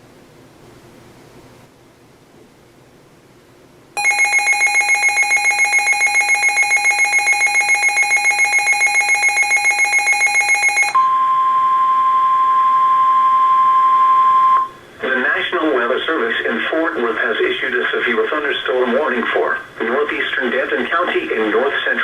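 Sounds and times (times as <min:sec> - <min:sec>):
rapid pulsing alarm beep: 0:04.0 - 0:14.7
steady warning alarm tone: 0:04.0 - 0:14.8.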